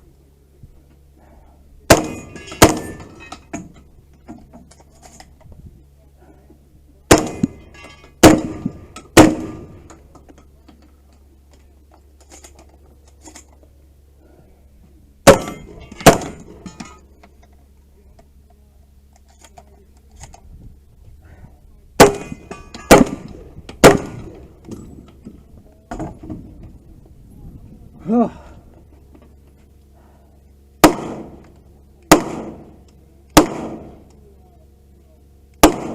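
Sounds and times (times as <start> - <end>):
gunshots: 1.9 - 3.2, 7.1 - 7.6, 8.2 - 9.8, 15.3 - 16.6, 22.0 - 24.4, 30.8 - 31.4, 32.1 - 32.7, 33.4 - 34.0, 35.6 - 35.9.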